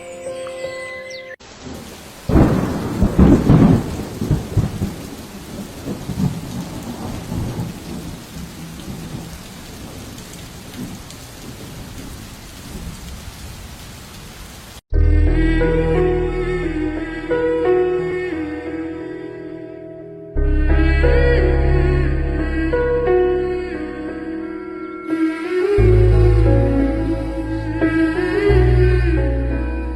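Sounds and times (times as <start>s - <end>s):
steady falling rain: 1.4s - 14.8s
thunder cracking and rumbling: 1.6s - 13.6s.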